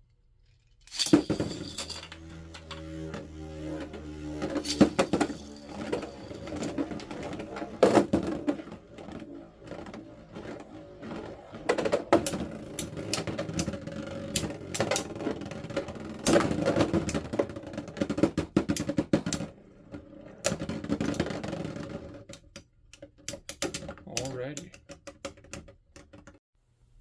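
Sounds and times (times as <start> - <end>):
spinning tops whirring and clashing: 0.8 - 22.2
plastic clatter and scraping: 0.8 - 26.4.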